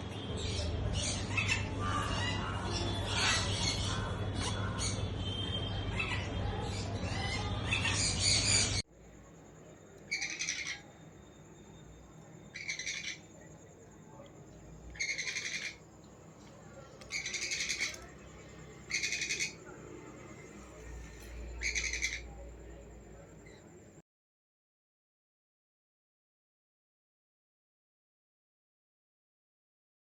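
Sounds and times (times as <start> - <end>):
birds chattering and squawking: 0.1 - 24.0
parrot rasping call: 10.1 - 11.0, 12.4 - 13.4, 14.9 - 15.8, 17.1 - 19.6, 21.4 - 22.4.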